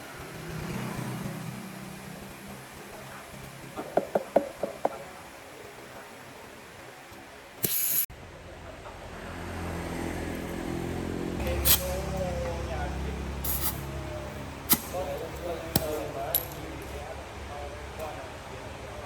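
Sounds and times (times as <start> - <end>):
metal tool taps: 3.8 - 5.0
compressed air hiss: 7.6 - 8.1, 11.6 - 12.0, 13.4 - 13.9
low engine hum: 8.2 - 19.0.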